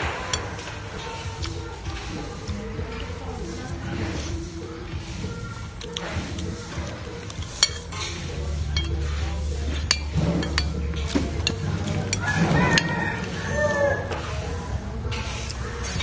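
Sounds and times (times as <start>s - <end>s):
spoons clinking against bowls: 7.2s - 13.4s.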